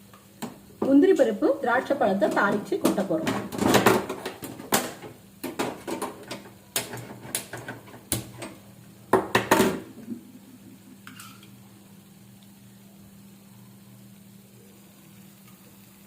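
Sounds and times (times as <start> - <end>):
faint steady hum: 0.0 - 16.0
metal pans and utensils clinking: 1.7 - 8.6, 11.0 - 11.6.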